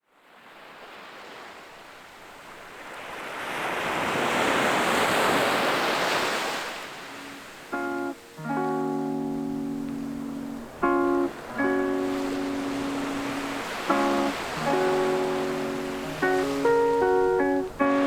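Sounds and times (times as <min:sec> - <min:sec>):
acoustic guitar music: 0:07.2 - 0:18.0.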